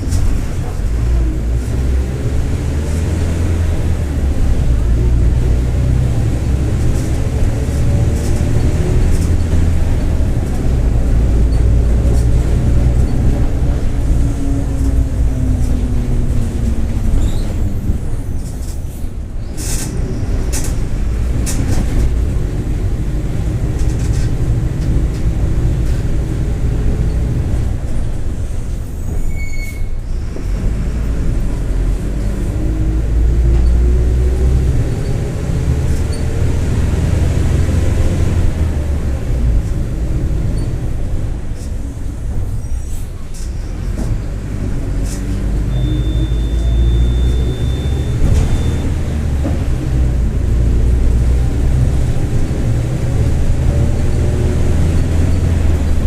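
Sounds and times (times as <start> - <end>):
bus diesel engine humming: 0.0 - 56.0
brief high squeal: 28.9 - 30.1, 45.7 - 49.0.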